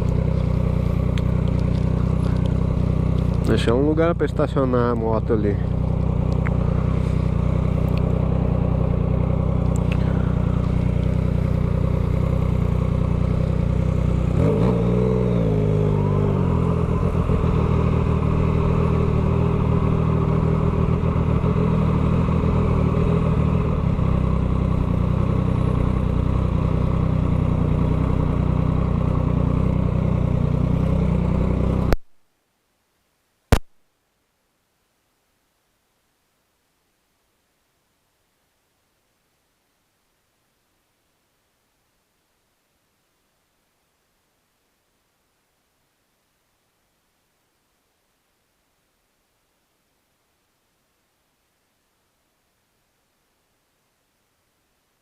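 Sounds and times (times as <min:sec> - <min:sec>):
motorcycle engine idling: 0:00.0 - 0:32.0.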